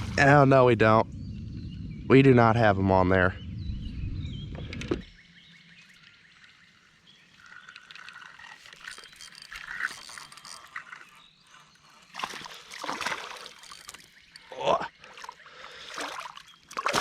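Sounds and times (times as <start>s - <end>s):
fishing reel ticking whir: 7.3s - 11.9s.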